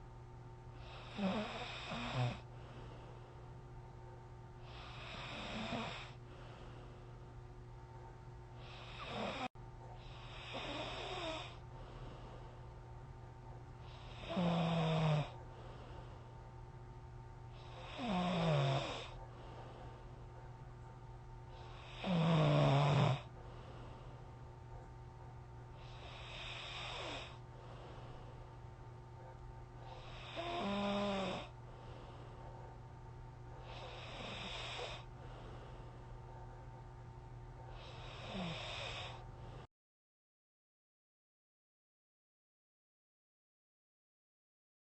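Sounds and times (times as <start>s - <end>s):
person snoring: 0.8s - 2.5s, 4.6s - 6.2s, 8.6s - 11.6s, 13.9s - 15.4s, 17.6s - 19.2s, 21.6s - 23.3s, 25.8s - 28.1s, 29.9s - 31.6s, 33.6s - 35.6s, 37.7s - 39.2s.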